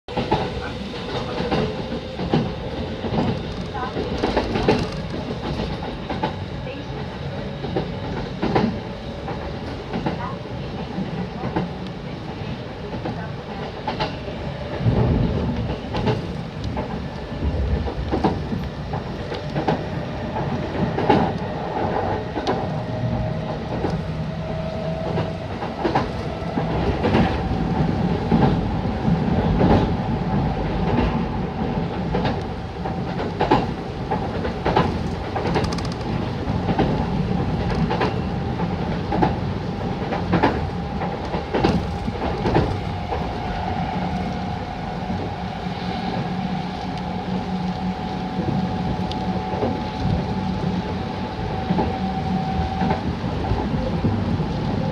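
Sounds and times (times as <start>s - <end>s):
steady train rumble: 0.0s - 54.9s
train wheels clacking over rail joints: 0.1s - 6.4s, 23.4s - 44.1s.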